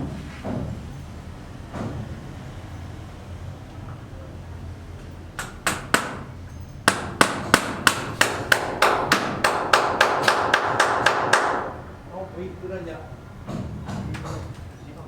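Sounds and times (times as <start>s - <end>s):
hammer strikes: 5.4s - 12.0s.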